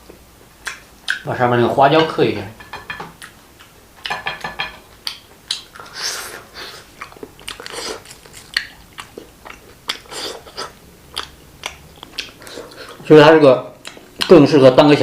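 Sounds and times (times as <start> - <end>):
chewing crunchy fried food: 4.9 - 13.1, 13.7 - 14.5.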